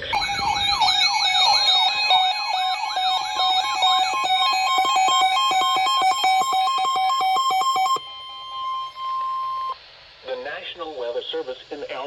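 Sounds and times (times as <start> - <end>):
siren-like wail: 0.0 - 9.8
stuttering electronic beeps: 0.0 - 9.8
steady two-note tone: 0.1 - 9.8.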